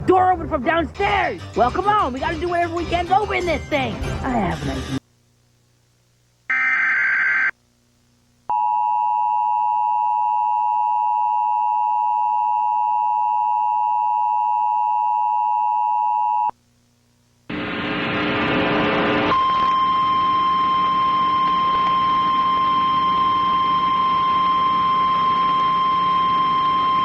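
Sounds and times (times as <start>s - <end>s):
loud noisy hiss: 17.5s - 19.3s.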